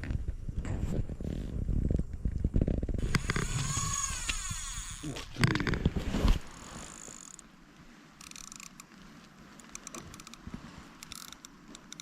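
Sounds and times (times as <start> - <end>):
fishing reel buzz: 3.0 - 5.3, 6.5 - 7.5, 8.2 - 8.8, 11.0 - 12.0
clicks and handling noises: 8.2 - 12.0.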